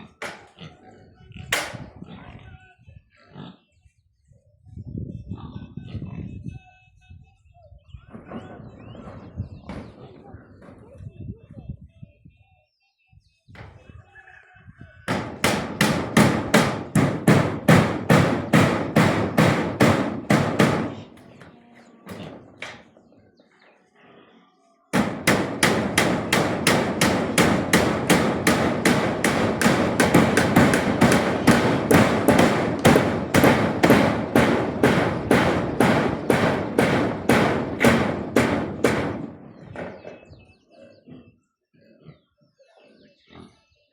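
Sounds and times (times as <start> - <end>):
rapid even knocking: 15.1 - 21.4, 25.0 - 39.9.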